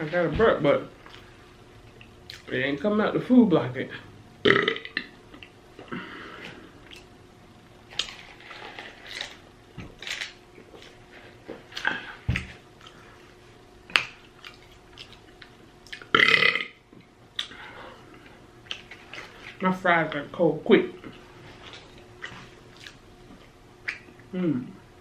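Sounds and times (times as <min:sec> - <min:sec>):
chewing and lip smacking: 0:01.9 - 0:02.5, 0:14.0 - 0:16.1, 0:21.6 - 0:24.3.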